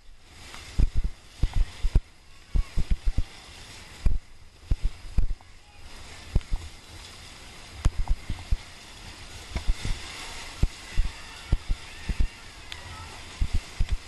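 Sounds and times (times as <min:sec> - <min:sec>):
paddle strokes thumping: 0:00.0 - 0:03.3, 0:04.0 - 0:05.5, 0:07.8 - 0:12.3
rushing whitewater: 0:00.0 - 0:14.0.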